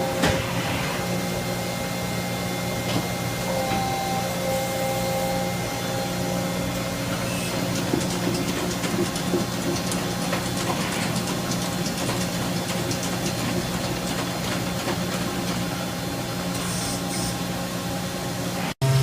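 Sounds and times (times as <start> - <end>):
faint machine whine: 0.0 - 8.0
machine hum: 0.0 - 19.0.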